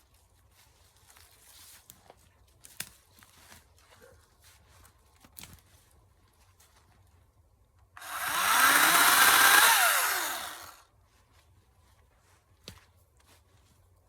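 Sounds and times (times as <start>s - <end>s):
chainsaw motor running: 8.0s - 10.8s.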